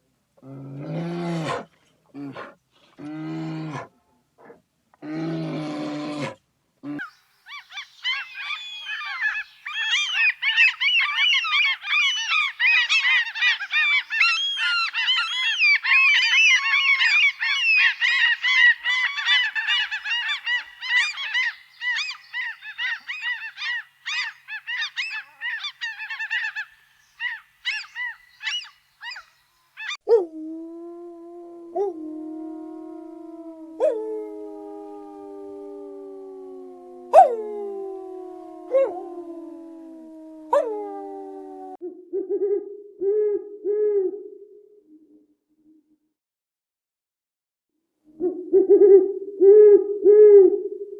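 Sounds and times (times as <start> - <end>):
flock of birds calling: 7.0 - 30.0
animal howl-like call: 30.1 - 44.2.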